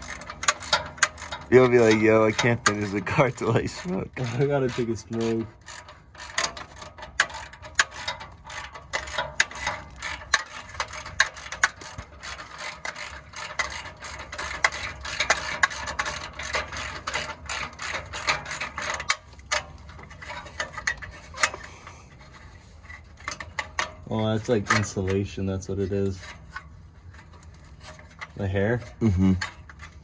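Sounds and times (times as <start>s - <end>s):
ratchet wrench clicking: 0.0s - 21.6s.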